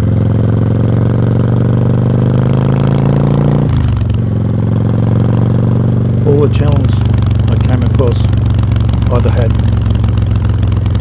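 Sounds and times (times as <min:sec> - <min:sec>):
motorcycle exhaust accelerating: 0:00.0 - 0:11.0.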